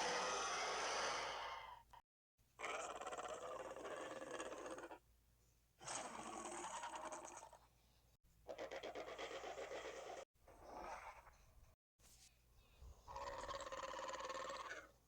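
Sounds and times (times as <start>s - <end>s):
creature raspy hiss-growls: 0.0s - 2.0s, 5.8s - 7.5s.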